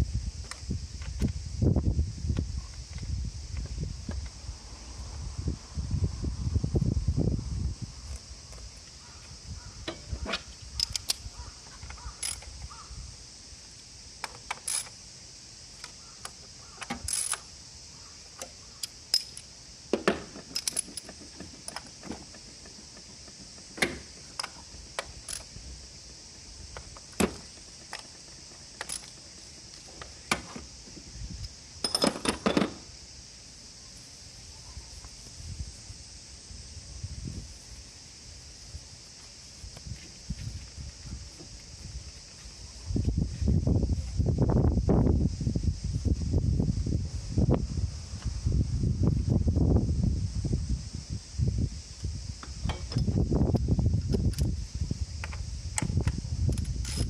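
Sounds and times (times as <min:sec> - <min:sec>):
steady high hiss: 0:00.0 - 0:57.0
metallic clicks of hand tools: 0:09.9 - 0:12.8, 0:15.8 - 0:17.5, 0:18.4 - 0:19.5, 0:20.4 - 0:25.5, 0:26.7 - 0:30.4.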